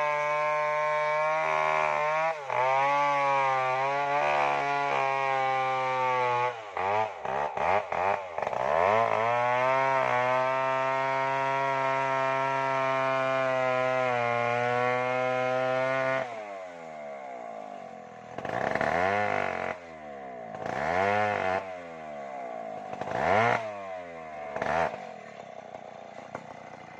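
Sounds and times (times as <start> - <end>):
chainsaw revving: 0.0 - 26.9.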